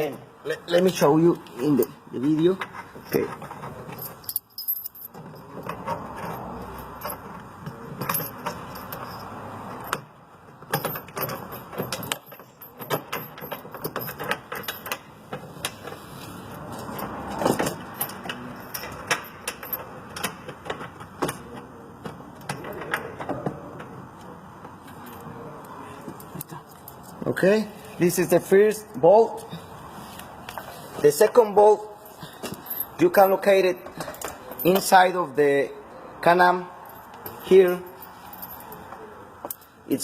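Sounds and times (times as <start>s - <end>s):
metal bolts and tools clinking: 1.7s - 16.0s, 16.8s - 24.0s, 32.1s - 35.2s, 36.8s - 39.8s.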